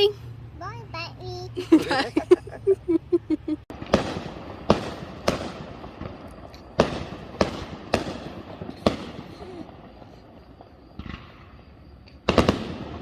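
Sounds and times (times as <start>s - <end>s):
fireworks bangs: 3.0s - 13.0s.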